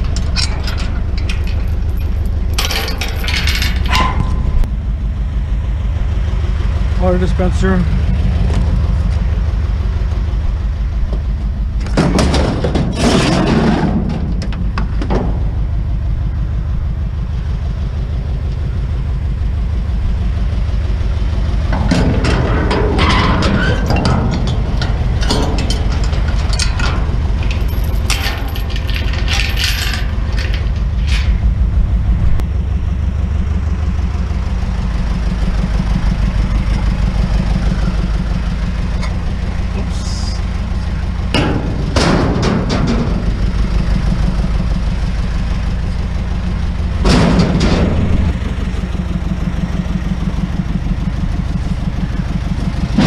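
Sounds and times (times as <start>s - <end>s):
truck engine idling: 0.0s - 53.0s
scrap items clattering: 21.9s - 31.5s.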